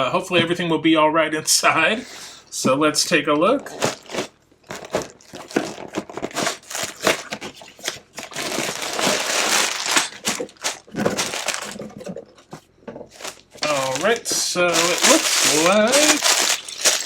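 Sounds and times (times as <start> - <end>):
plastic bags crinkling: 3.5 - 17.0.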